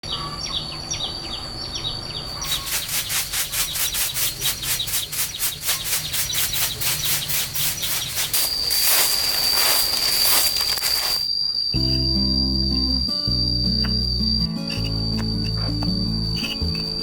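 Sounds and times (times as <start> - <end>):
high falling bird chirps: 0.0 - 14.8
rhythmic rasping: 11.8 - 17.0.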